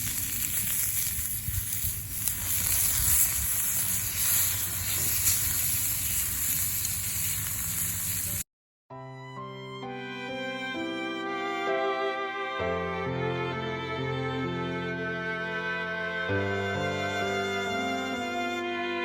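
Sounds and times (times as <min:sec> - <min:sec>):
strong wind buffeting microphone: 0:00.0 - 0:06.5.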